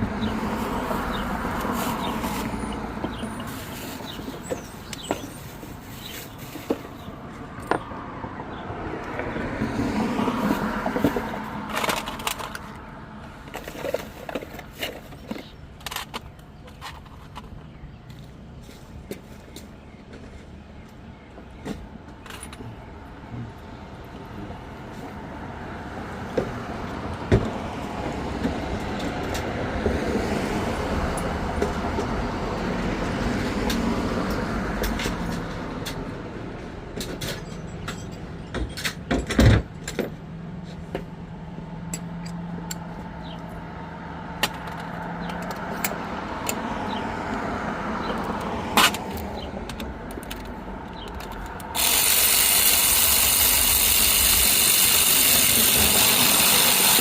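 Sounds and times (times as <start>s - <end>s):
road traffic: 0.0s - 57.0s
sharp metallic clicks and knocks: 11.0s - 17.7s, 41.9s - 43.4s, 44.4s - 47.4s, 48.0s - 57.0s.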